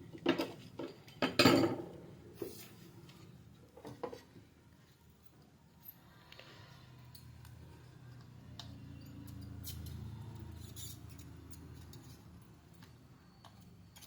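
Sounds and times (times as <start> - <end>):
small metal tools clinking: 8.6 - 14.0.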